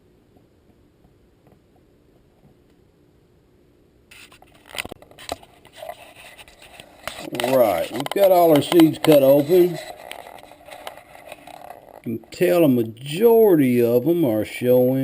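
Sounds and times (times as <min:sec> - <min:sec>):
light scraping: 0:04.1 - 0:13.2.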